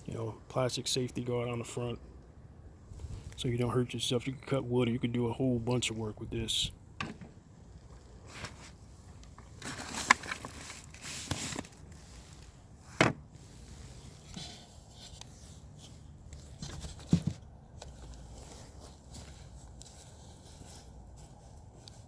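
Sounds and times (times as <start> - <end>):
rustling and scraping: 7.1 - 22.0.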